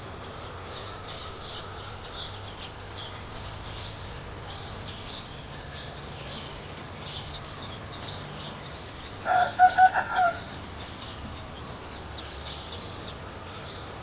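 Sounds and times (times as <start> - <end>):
rooster crowing: 9.2 - 10.6.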